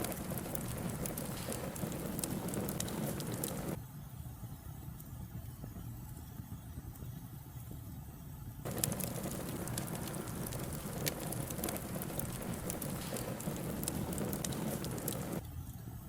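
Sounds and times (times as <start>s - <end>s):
burning wood crackling: 0.0s - 3.8s, 8.6s - 15.5s.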